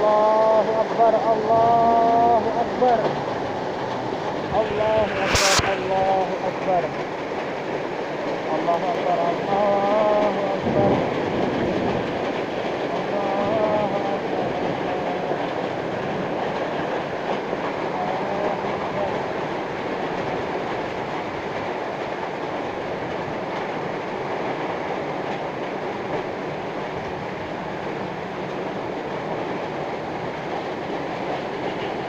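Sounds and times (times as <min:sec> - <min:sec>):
heavy wind-driven rain: 0:00.0 - 0:32.0.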